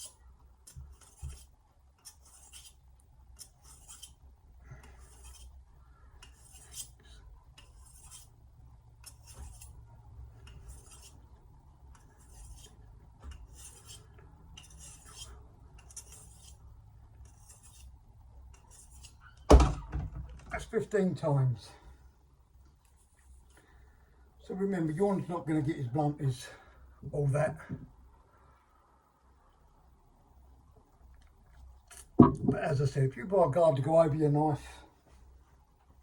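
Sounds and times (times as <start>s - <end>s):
knife edge scraping hard surface: 0.0s - 2.8s, 3.4s - 4.2s, 4.8s - 5.6s, 6.2s - 8.4s, 9.0s - 9.8s, 10.4s - 11.3s, 11.9s - 16.6s, 17.2s - 17.9s, 18.5s - 19.4s.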